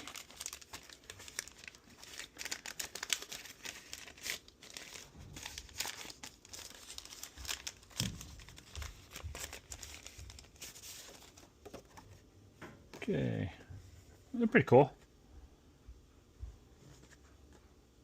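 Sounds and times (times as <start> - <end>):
plastic bag crinkling: 0.0 - 11.4.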